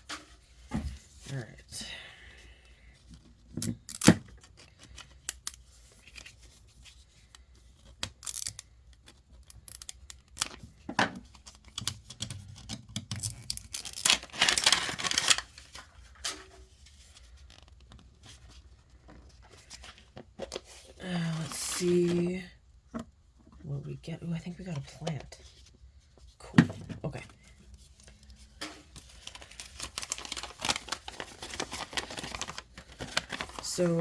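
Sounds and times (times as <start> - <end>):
plastic packaging tearing and crinkling: 3.6 - 6.4, 8.0 - 10.7, 11.7 - 16.3, 28.9 - 34.0.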